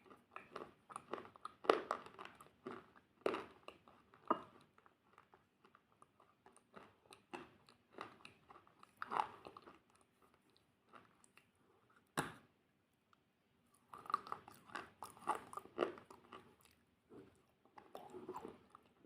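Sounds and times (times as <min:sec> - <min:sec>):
crunchy food being chewed: 0:00.0 - 0:12.2, 0:13.7 - 0:19.0.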